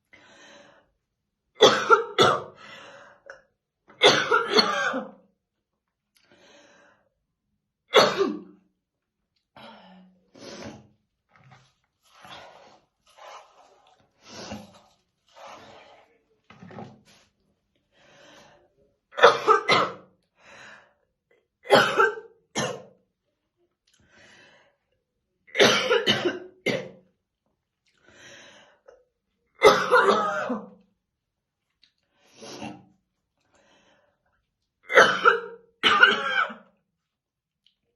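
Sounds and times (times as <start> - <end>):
breaths: 0.0 - 1.1, 2.6 - 3.5, 6.2 - 7.2, 9.6 - 11.0, 17.8 - 18.9, 20.3 - 21.1, 23.9 - 25.0, 27.9 - 29.1, 33.4 - 34.5
woman coughing: 1.6 - 2.6, 4.0 - 5.2, 8.0 - 8.5, 19.2 - 20.0, 21.7 - 22.9, 25.5 - 27.0, 29.6 - 30.7, 34.9 - 36.6.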